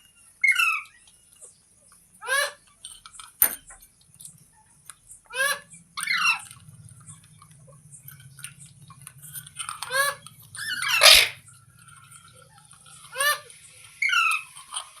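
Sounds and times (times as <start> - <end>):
parakeet screeching: 2.2 - 2.6, 5.3 - 6.5, 9.8 - 11.4, 13.1 - 14.6
steady low hum: 3.3 - 14.0.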